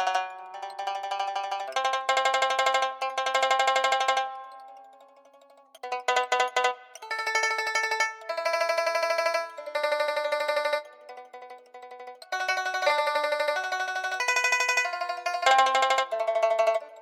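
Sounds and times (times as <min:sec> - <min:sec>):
plucked-string melody: 0:00.0 - 0:17.0.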